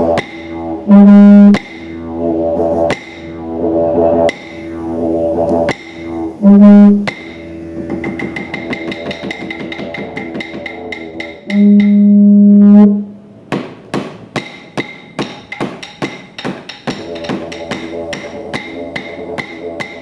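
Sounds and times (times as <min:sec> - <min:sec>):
didgeridoo drone: 0:00.0 - 0:13.4, 0:16.9 - 0:20.0
clapstick beats: 0:07.9 - 0:12.1, 0:13.6 - 0:20.0.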